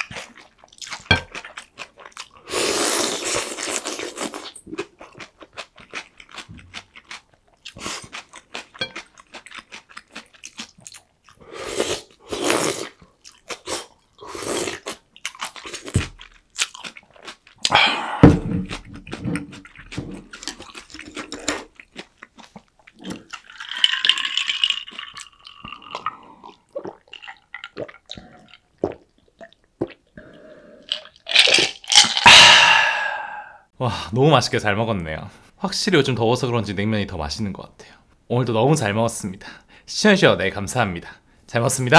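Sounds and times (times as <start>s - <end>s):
crunching bites and chewing: 0.0s - 17.8s, 18.6s - 26.1s, 30.9s - 32.7s.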